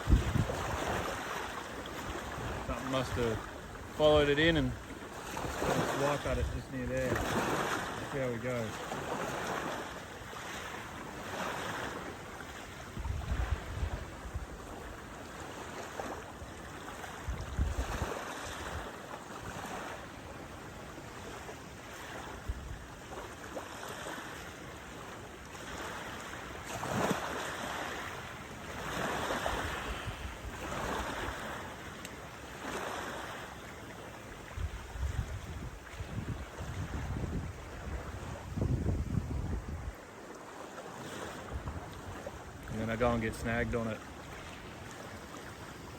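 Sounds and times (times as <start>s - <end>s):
wind buffeting microphone: 0.0s - 1.3s, 12.8s - 15.0s, 17.2s - 18.9s, 28.7s - 31.6s, 34.4s - 40.1s, 41.4s - 43.8s
water washing on shore: 0.0s - 45.9s.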